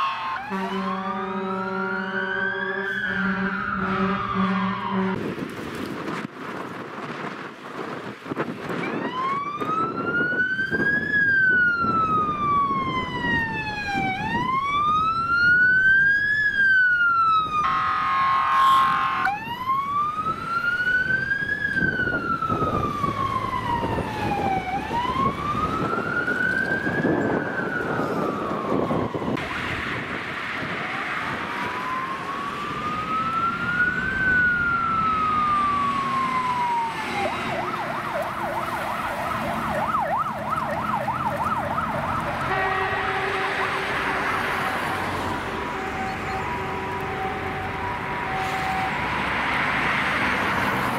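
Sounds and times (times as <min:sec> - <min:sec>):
fire engine siren wailing: 0:00.0 - 0:50.9
truck air horn blast: 0:00.4 - 0:05.2, 0:17.7 - 0:19.3, 0:42.5 - 0:48.9.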